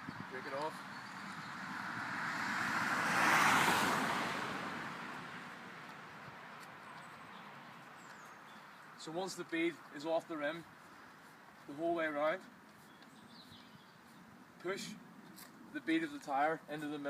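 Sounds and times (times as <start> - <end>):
car passing by: 0.6 - 6.3.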